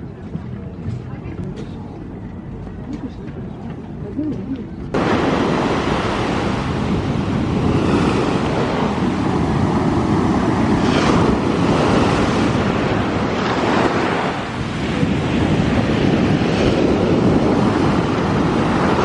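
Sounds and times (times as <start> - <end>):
wind buffeting microphone: 0.0 - 19.0
sea waves breaking: 4.9 - 19.0.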